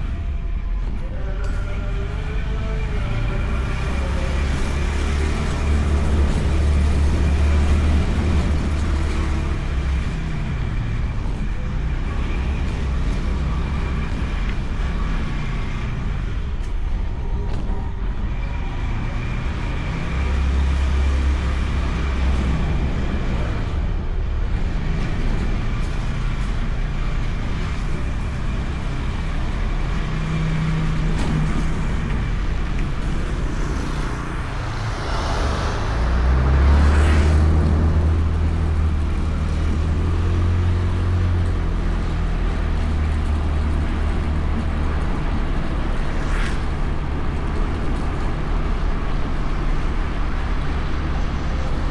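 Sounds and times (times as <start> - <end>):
passing traffic: 0.0 - 51.9
road and wind rumble: 0.0 - 51.9
scooter engine running: 27.7 - 39.8.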